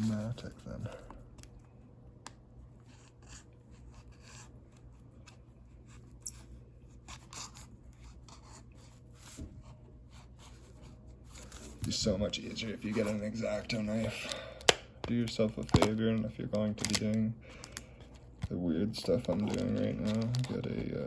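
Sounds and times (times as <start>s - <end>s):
plastic blister pack scratching: 18.9s - 21.0s.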